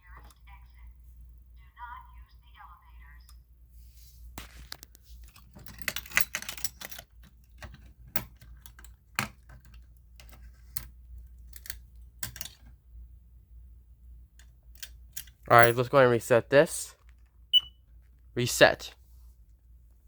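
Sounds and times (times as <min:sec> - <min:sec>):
hard objects clicking and rattling: 0:05.2 - 0:10.9.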